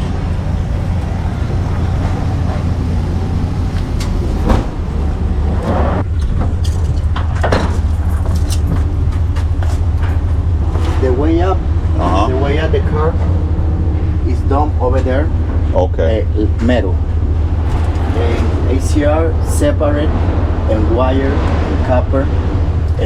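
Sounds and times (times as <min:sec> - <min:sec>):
vehicle engine rumble: 0:00.0 - 0:23.0
knocks and rattles: 0:03.7 - 0:20.7.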